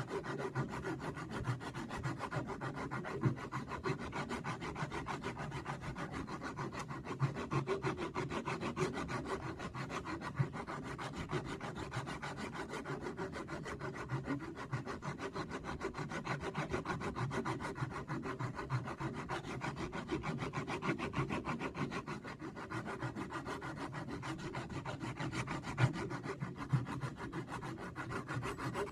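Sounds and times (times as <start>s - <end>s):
sandpaper scraping wood: 0.0s - 28.9s.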